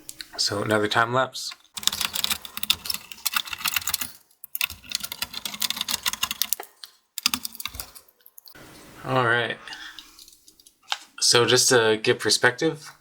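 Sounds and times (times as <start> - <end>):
fast clicks and rattles: 1.6 - 8.6.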